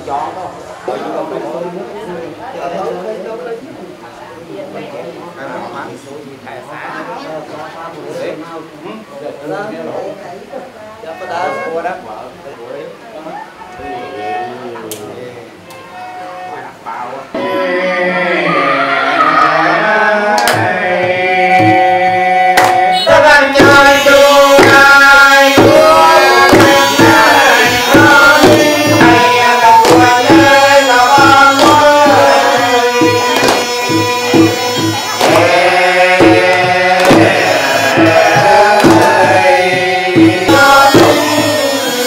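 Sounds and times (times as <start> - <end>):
wedding music melody: 11.0 - 42.0
hand drum strokes: 20.4 - 42.0.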